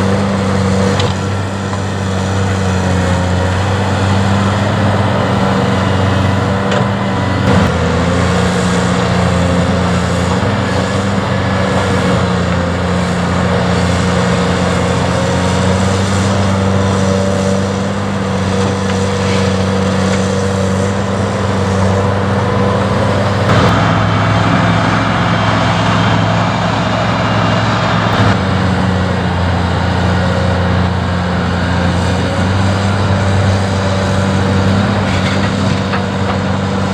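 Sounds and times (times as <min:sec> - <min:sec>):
heavy diesel engine running: 0:00.0 - 0:36.9.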